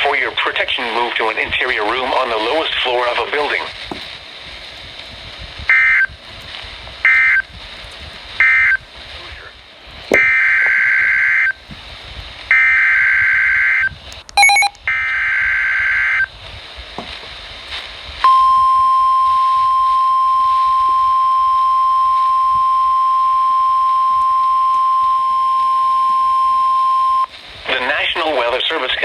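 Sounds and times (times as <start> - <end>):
steady warning alarm tone: 14.4 - 14.8.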